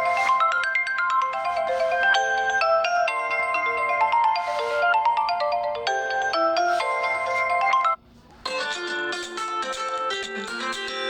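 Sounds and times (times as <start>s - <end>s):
phone ringtone melody: 0.0s - 8.0s.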